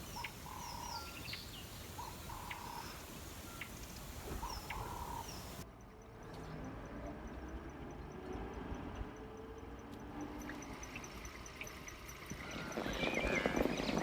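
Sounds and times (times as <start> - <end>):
wild birds calling: 0.0 - 5.6, 10.6 - 14.0
outdoor background noise: 0.0 - 14.0.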